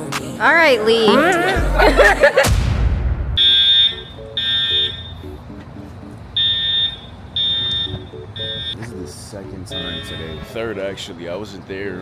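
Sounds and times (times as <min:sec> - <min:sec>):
fire alarm beeping: 0:03.4 - 0:05.4, 0:06.4 - 0:08.8, 0:09.7 - 0:10.6.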